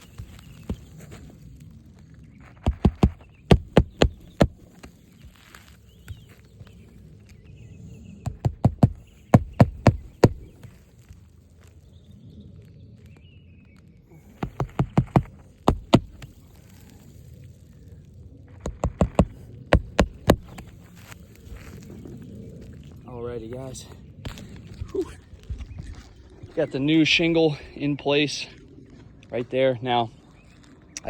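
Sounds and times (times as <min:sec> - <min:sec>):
hammer driving nails: 0:02.6 - 0:04.6, 0:08.3 - 0:10.5, 0:14.4 - 0:16.2, 0:18.6 - 0:20.7.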